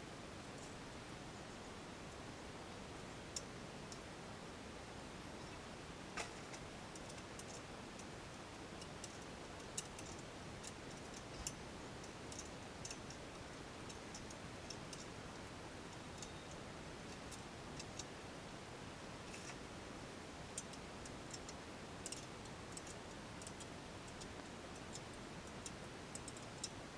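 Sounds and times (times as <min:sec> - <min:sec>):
light clicks and ticks: 0:03.0 - 0:04.1, 0:06.2 - 0:18.2, 0:20.4 - 0:26.8.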